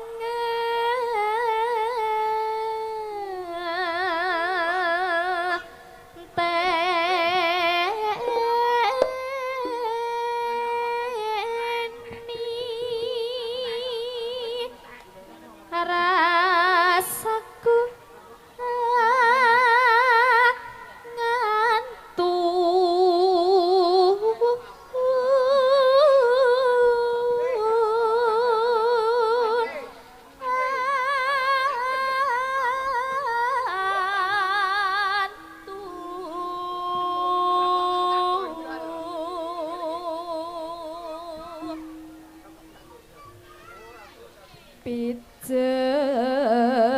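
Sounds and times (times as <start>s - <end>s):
melodic lead with vibrato: 38.4s - 44.4s.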